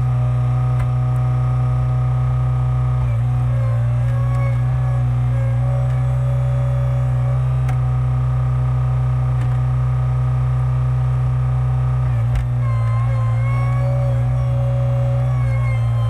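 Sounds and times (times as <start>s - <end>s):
engine and hydraulics humming: 0.0s - 16.0s.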